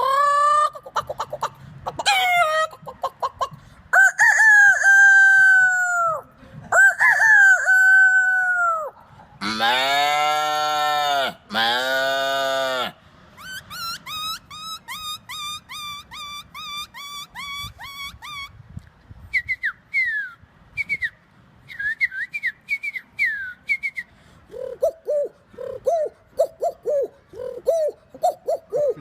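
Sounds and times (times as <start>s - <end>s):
man whistling bird notes: 19.3s - 24.1s.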